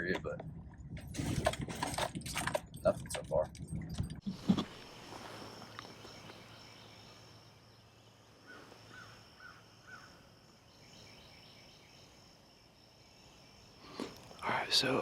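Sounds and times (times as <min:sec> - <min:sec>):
bird chirps: 0:04.3 - 0:15.0.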